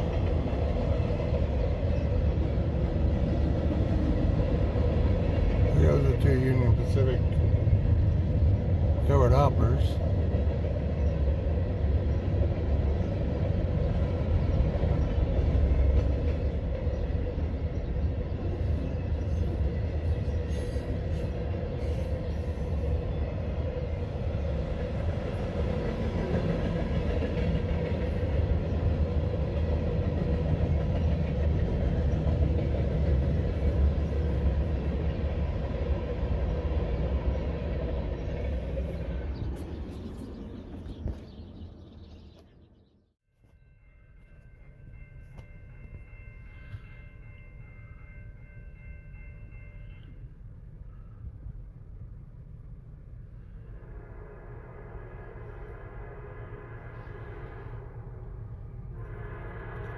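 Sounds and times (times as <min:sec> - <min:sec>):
freight train wheels rumbling on rails: 0:00.0 - 0:42.6, 0:43.4 - 0:59.9.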